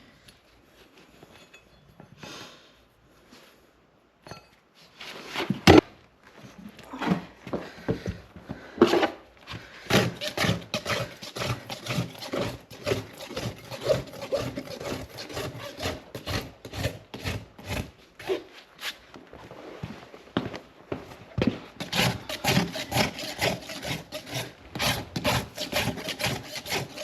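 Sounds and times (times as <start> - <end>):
tool scraping horse hoof: 9.9 - 19.0, 21.8 - 27.0.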